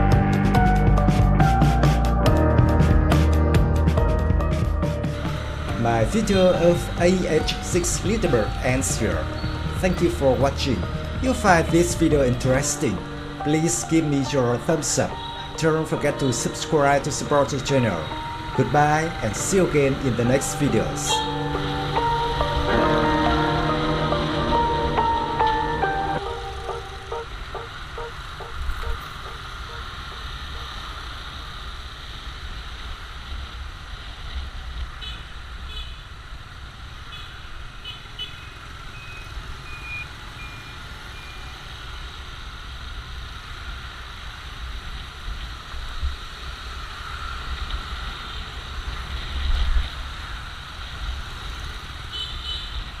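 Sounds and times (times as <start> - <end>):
engine rumbling: 0.0 - 16.3.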